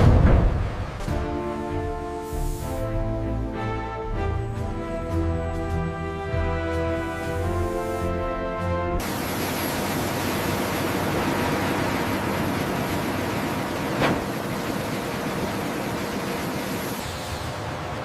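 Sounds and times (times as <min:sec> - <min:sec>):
rushing mechanical noise: 0:09.0 - 0:18.0.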